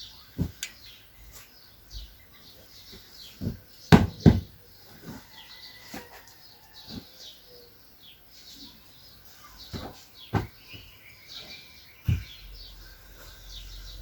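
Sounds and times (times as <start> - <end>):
small birds chirping: 0.0 - 14.0
thuds: 0.4 - 0.7, 2.9 - 5.2, 9.7 - 10.9, 12.0 - 12.5.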